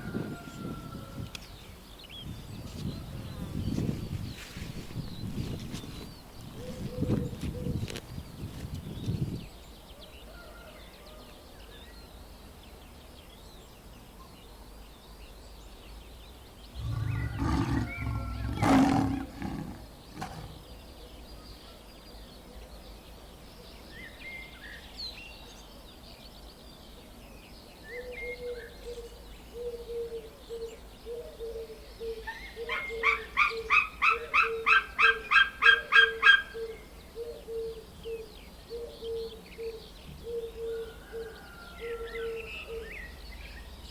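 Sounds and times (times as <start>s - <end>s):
shrill high animal calls: 16.8s - 20.6s
deep drawn-out animal call: 16.8s - 20.7s.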